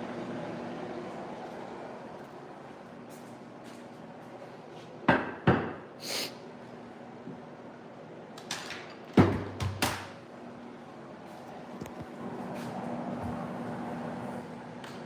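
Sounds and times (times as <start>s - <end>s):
kitchen knocks and clunks: 5.1s - 5.8s, 8.6s - 10.1s.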